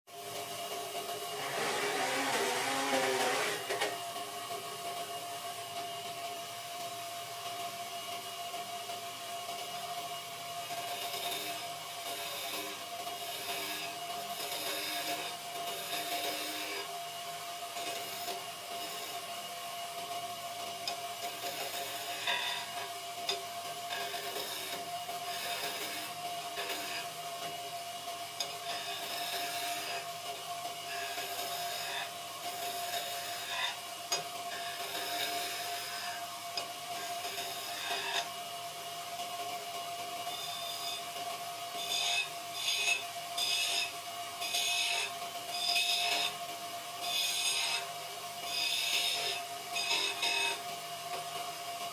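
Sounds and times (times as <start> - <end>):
tool scraping on wood: 1.2 - 4.0, 21.4 - 27.1
hand tool scraping wood: 1.3 - 4.0.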